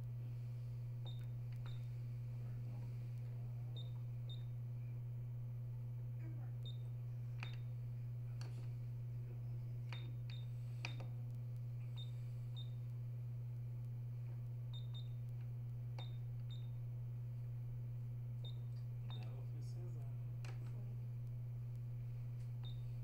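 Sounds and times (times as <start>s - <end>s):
low electrical hum: 0.0s - 23.0s.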